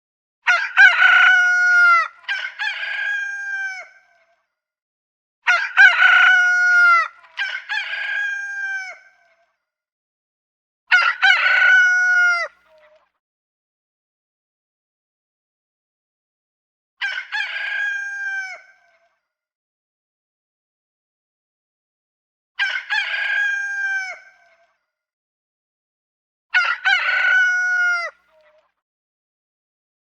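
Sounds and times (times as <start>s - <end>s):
rooster crowing: 0.5s - 4.0s, 5.5s - 9.0s, 10.9s - 12.6s, 17.0s - 18.8s, 22.6s - 24.4s, 26.6s - 28.2s.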